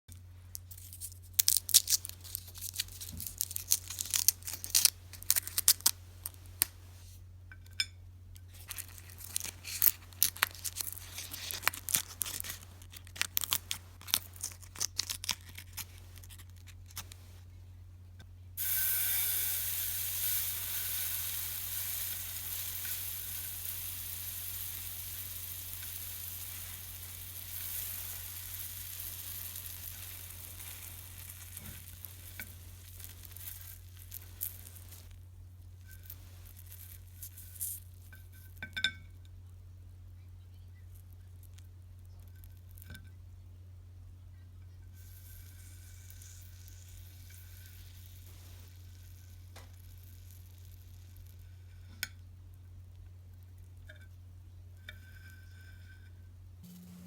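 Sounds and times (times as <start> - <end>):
sharp crackles and clicks: 0.5 - 6.9, 8.4 - 17.4, 18.6 - 38.7, 45.0 - 52.2
hot knife sizzling on candy: 0.5 - 7.2, 7.8 - 17.4, 18.6 - 39.0, 44.9 - 53.9, 54.8 - 57.0.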